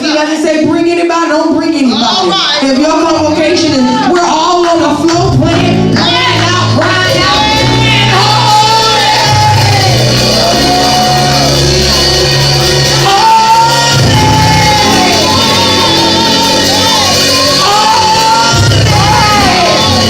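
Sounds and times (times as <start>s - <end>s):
people singing praise music: 3.6s - 20.0s
steady bass notes: 4.8s - 20.0s.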